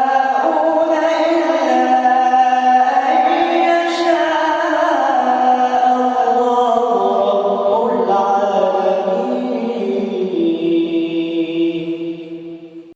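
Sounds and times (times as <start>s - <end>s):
man chanting melodically: 0.0s - 12.9s.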